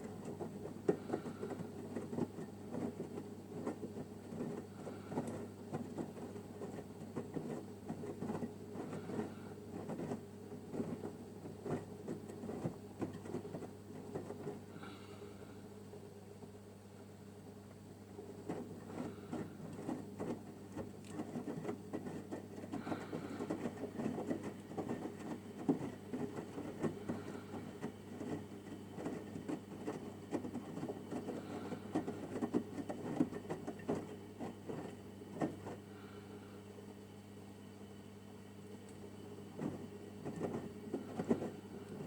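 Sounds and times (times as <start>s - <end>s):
washing machine motor hum: 0.0s - 42.0s.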